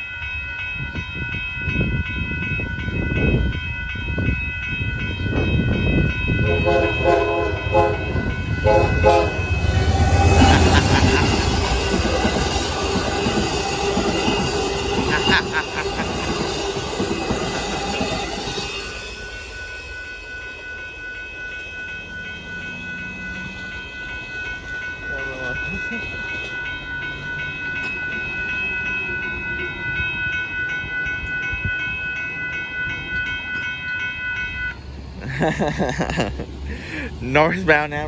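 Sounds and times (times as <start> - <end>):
crossing bell ringing: 0.0 - 38.0
train wheels clacking on rails: 0.8 - 38.0.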